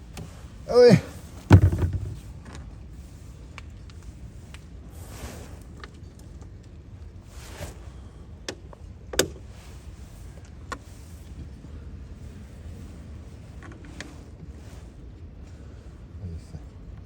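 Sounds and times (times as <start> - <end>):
plastic parts clicking and knocking: 1.5 - 2.6.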